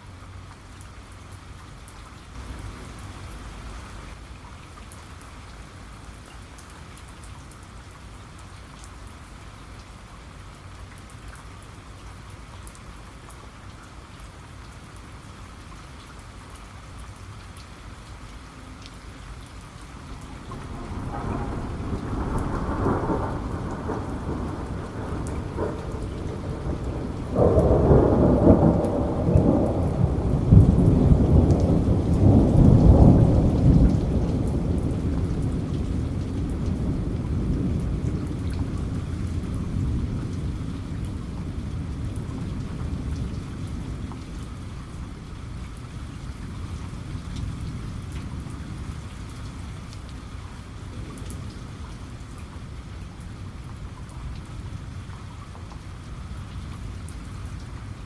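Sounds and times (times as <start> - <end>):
rain pattering: 0.0 - 58.0
thunderclap rumbling: 20.3 - 44.1.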